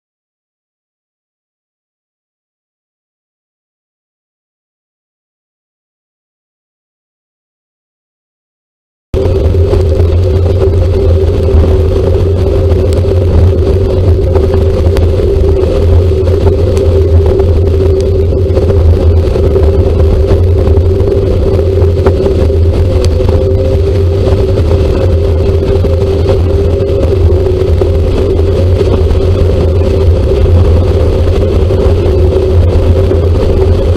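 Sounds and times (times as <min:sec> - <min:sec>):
two-tone hum: 0:09.2 - 0:33.9
vehicle low rumble: 0:09.2 - 0:33.9.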